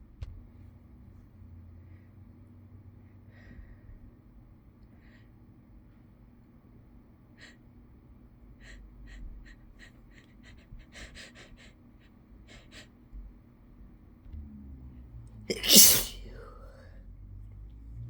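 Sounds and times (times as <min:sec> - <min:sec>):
person gasping before a sneeze: 0:15.5 - 0:16.5
quick sharp breaths: 0:15.5 - 0:16.8.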